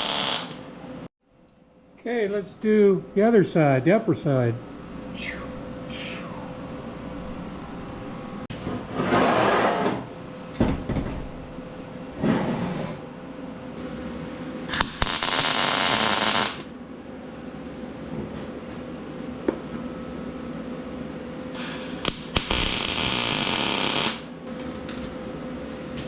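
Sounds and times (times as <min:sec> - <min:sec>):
welding arc crackling: 0:00.0 - 0:00.7, 0:14.7 - 0:16.7, 0:21.6 - 0:24.3
steady low hum: 0:00.0 - 0:26.0.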